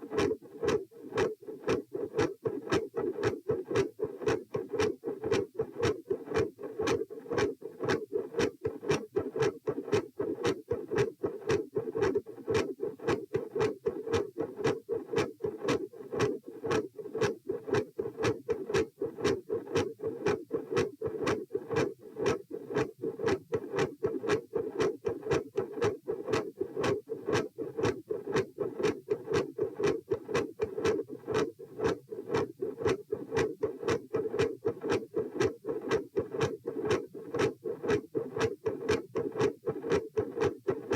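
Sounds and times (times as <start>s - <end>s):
heartbeat through stethoscope: 0.0s - 40.9s.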